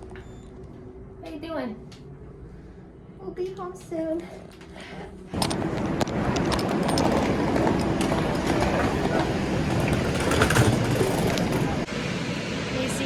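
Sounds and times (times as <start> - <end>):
passenger train on rails: 5.3 - 13.0.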